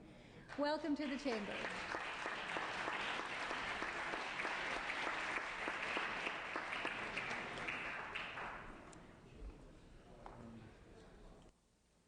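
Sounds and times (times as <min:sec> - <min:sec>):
crowd applauding: 0:01.0 - 0:09.0.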